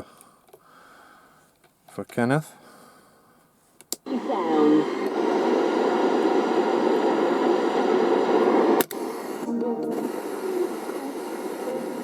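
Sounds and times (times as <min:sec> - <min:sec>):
rushing radio noise: 0:04.1 - 0:12.0
radio switch click: 0:05.0 - 0:11.6.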